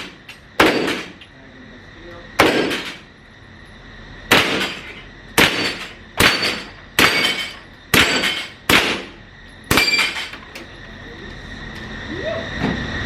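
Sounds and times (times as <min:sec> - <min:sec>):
gunshots with ringing decay: 0:00.6 - 0:01.2, 0:02.4 - 0:03.0, 0:04.3 - 0:04.8, 0:05.4 - 0:09.1.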